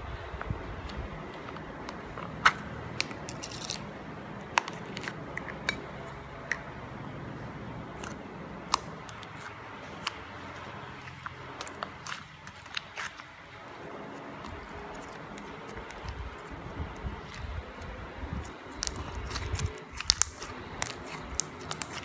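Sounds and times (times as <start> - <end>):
slime squished by hand: 8.0 - 22.0.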